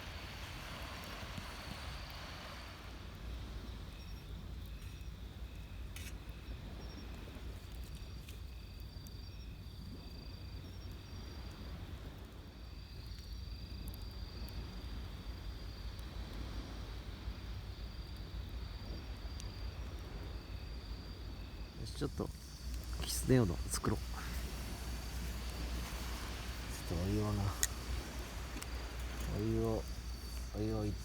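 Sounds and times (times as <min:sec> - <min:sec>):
campfire pops: 0:00.0 - 0:02.3, 0:20.8 - 0:31.0
insects chirping: 0:00.0 - 0:31.0
steady low rumble: 0:20.7 - 0:31.0.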